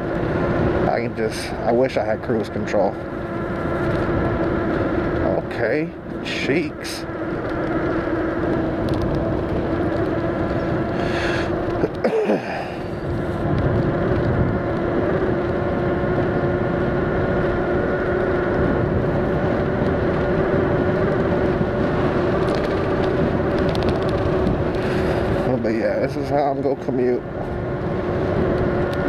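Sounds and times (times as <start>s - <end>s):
loud wind buffet: 0.0s - 29.0s
road rumble: 0.0s - 29.0s
wind: 0.0s - 29.0s
electric bike motor whining: 7.1s - 25.6s.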